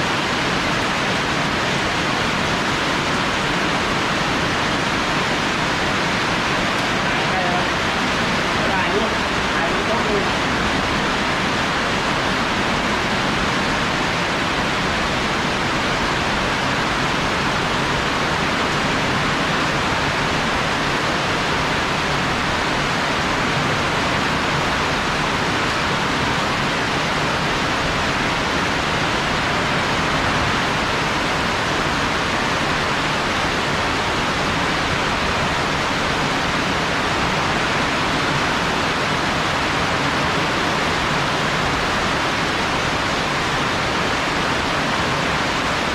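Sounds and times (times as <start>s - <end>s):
heavy rain falling: 0.0s - 45.9s.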